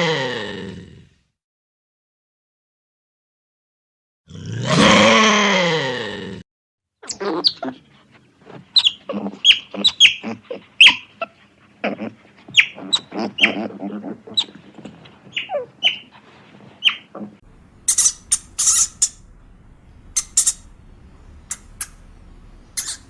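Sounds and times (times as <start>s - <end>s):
harsh hissing bursts: 17.8s - 19.2s.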